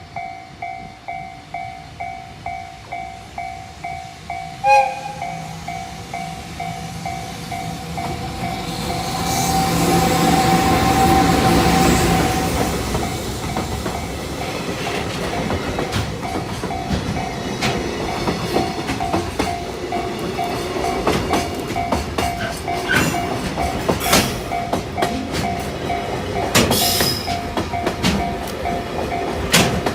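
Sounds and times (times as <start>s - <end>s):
crossing warning bell ringing: 0.0s - 29.9s
freight train passing: 0.0s - 29.9s
locomotive horn blast: 4.6s - 5.5s
wheels clacking over rail joints: 7.5s - 29.9s.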